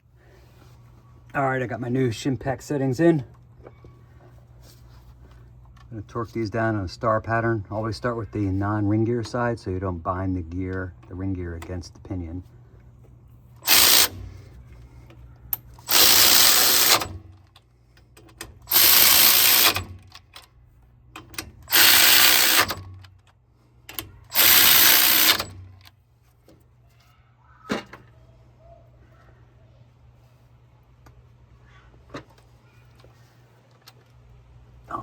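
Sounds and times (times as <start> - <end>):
power tool bursts: 13.6 - 14.5, 15.8 - 17.3, 18.6 - 20.1, 21.6 - 23.0, 24.3 - 25.8.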